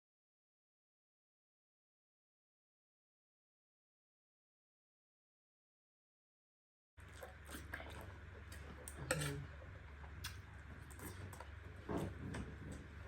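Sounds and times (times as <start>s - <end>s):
spoon clinking on a plate: 9.1s - 9.4s.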